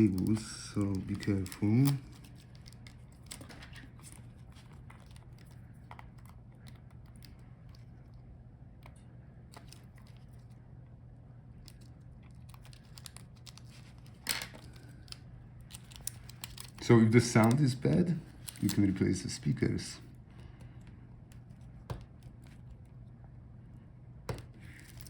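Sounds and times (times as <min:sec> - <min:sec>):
steady low hum: 0:00.0 - 0:25.0
small laptop parts clicking: 0:11.6 - 0:16.8.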